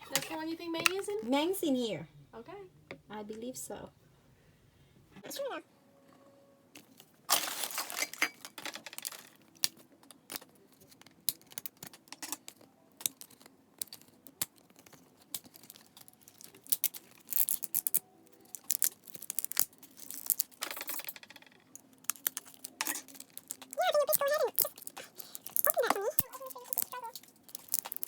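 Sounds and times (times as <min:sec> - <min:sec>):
packaging clicks and crinkles: 0:06.8 - 0:28.0
packaging tearing and rustling: 0:07.3 - 0:08.2, 0:13.1 - 0:21.0, 0:22.0 - 0:28.0.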